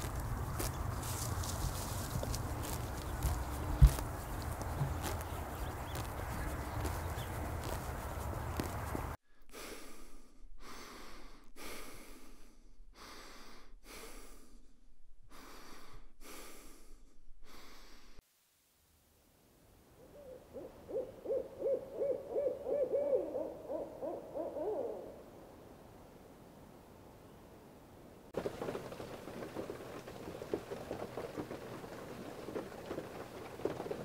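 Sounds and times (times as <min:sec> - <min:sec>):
person breathing through nose: 0:09.3 - 0:18.2
owl hooting: 0:20.0 - 0:25.2.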